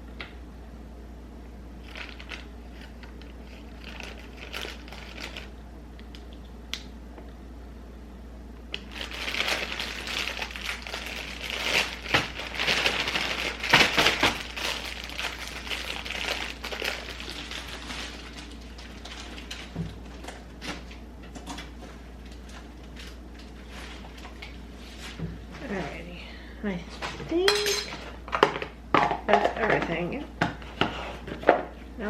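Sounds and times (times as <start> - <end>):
plastic wrapping crinkling: 1.8 - 6.2, 8.7 - 21.0, 21.6 - 25.1.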